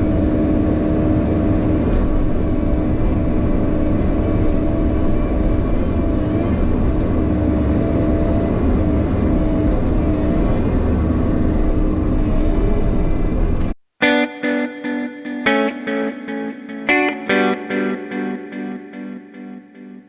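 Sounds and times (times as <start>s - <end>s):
diesel engine under load: 0.0s - 13.8s.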